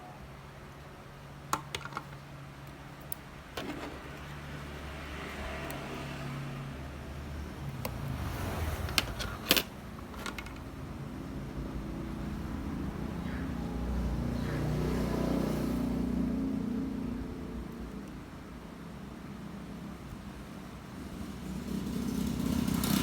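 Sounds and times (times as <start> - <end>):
vehicle engine rumbling past: 3.7 - 17.4, 20.8 - 23.0.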